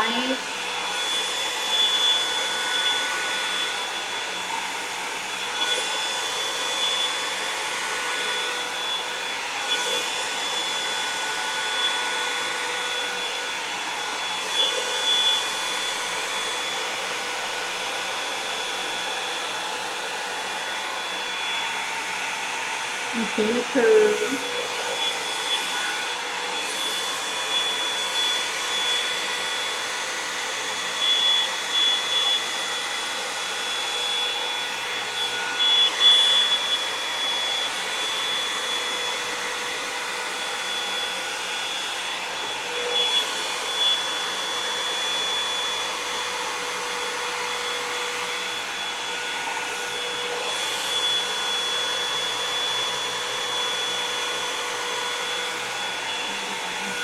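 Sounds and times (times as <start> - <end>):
hair dryer blowing with whine: 0.0 - 57.0.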